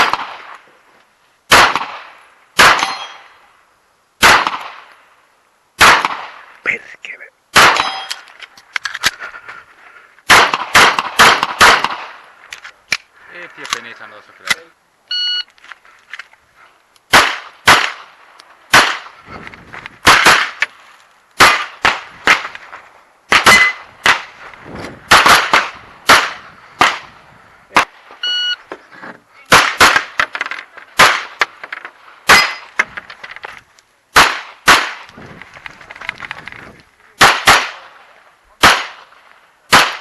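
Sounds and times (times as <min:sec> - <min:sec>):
pistol shots: 0:00.0 - 0:00.6, 0:01.5 - 0:03.3, 0:04.2 - 0:04.9, 0:05.8 - 0:06.4, 0:07.5 - 0:08.2, 0:10.3 - 0:12.2, 0:17.1 - 0:19.2, 0:20.0 - 0:20.6, 0:21.4 - 0:22.6, 0:23.3 - 0:24.4, 0:25.1 - 0:27.1, 0:29.5 - 0:30.2, 0:31.0 - 0:31.6, 0:32.3 - 0:32.8, 0:34.1 - 0:35.1, 0:37.2 - 0:38.0, 0:38.6 - 0:39.1, 0:39.7 - 0:40.0
steel targets clanging: 0:02.8 - 0:03.4, 0:07.8 - 0:08.3
shot timer beep: 0:15.1 - 0:15.5, 0:28.2 - 0:28.6.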